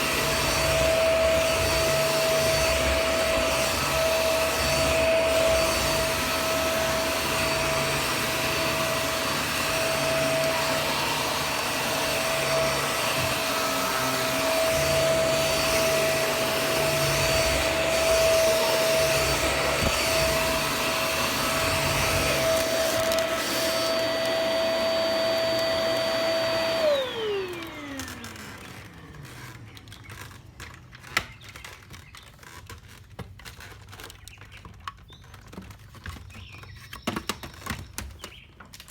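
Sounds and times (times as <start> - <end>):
vacuum motor whining: 0.0 - 30.8.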